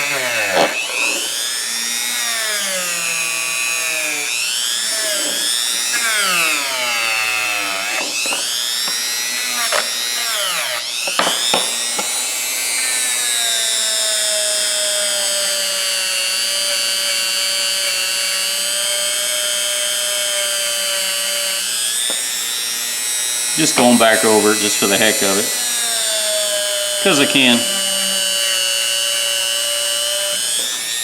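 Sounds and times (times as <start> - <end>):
wire wheel tool whining: 0.0 - 31.0.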